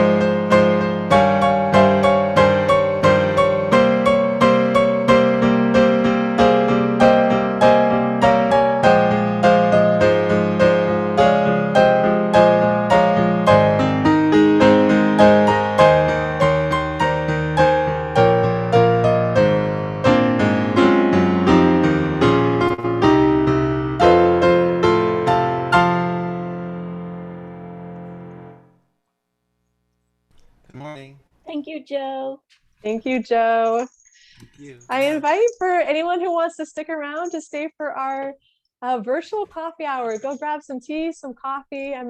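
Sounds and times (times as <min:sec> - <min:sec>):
slow piano melody: 0:00.0 - 0:28.8.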